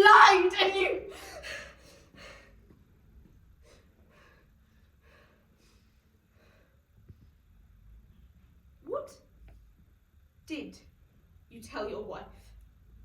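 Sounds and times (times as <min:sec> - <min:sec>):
woman breathing: 0:01.1 - 0:02.8, 0:03.6 - 0:07.1.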